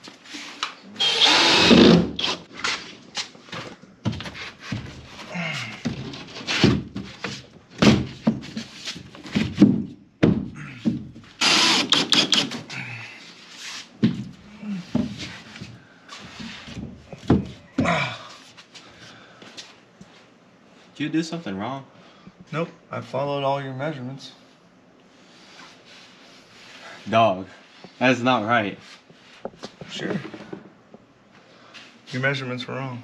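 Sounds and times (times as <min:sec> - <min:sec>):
drywall scraping: 0:05.9 - 0:09.6.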